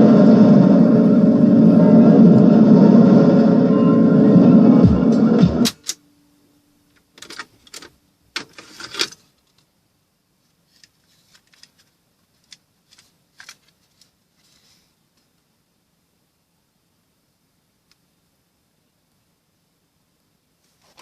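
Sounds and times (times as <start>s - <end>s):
low hum: 0.0s - 6.8s
song on cassette: 4.4s - 6.0s.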